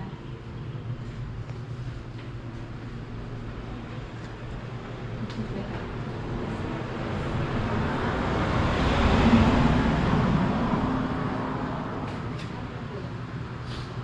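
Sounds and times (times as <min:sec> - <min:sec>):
vehicle passing by: 0:06.2 - 0:13.0.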